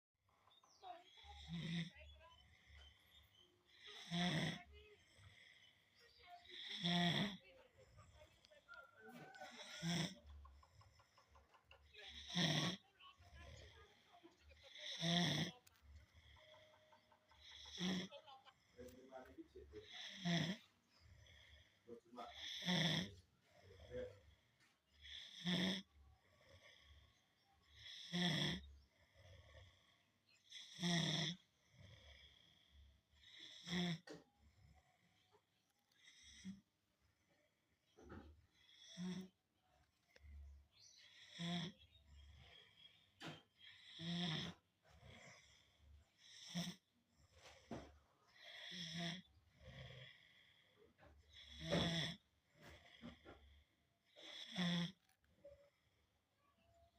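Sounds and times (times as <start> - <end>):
quiet breaths: 0.2 - 56.9
person snoring loudly: 1.1 - 2.7, 3.7 - 5.8, 6.5 - 7.4, 9.1 - 11.2, 12.1 - 13.6, 14.6 - 24.2, 25.0 - 27.0, 27.7 - 29.8, 30.4 - 32.6, 33.2 - 34.2, 38.6 - 39.4, 41.0 - 41.8, 42.6 - 46.8, 48.4 - 50.4, 51.3 - 53.2, 54.2 - 55.0.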